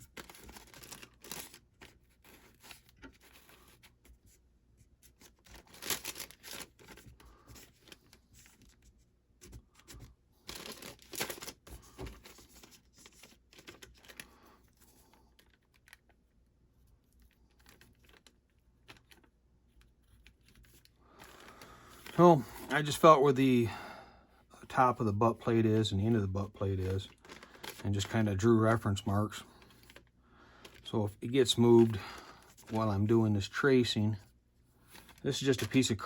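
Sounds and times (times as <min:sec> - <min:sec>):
paper rustling: 0:00.0 - 0:16.2, 0:25.3 - 0:32.9, 0:34.8 - 0:36.0.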